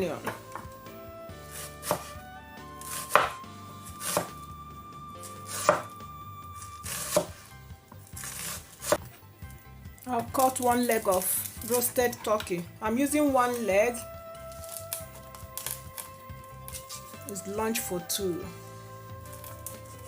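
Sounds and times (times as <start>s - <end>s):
soft background music: 0.0s - 20.0s
knife cutting through onion: 1.4s - 2.2s, 2.8s - 4.4s, 5.2s - 6.0s, 6.6s - 9.2s, 14.4s - 17.2s.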